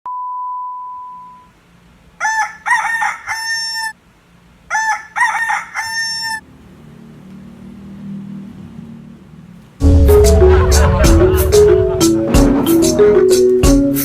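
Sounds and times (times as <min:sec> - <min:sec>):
rooster crow ringtone: 0:02.2 - 0:04.0, 0:04.7 - 0:06.4.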